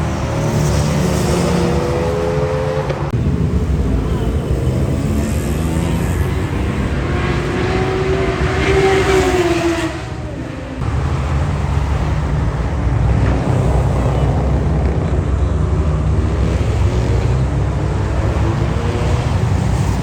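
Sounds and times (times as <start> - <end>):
motorcycle engine revving: 0.0 - 10.4
motorcycle engines rumbling: 0.0 - 20.0.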